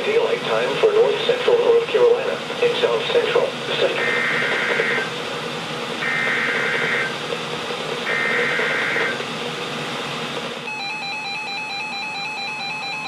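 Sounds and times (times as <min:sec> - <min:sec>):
radio hiss: 0:00.0 - 0:05.3, 0:06.0 - 0:07.4, 0:08.0 - 0:09.2
shrill two-tone data bursts: 0:04.0 - 0:05.1, 0:06.0 - 0:07.2, 0:08.1 - 0:09.2.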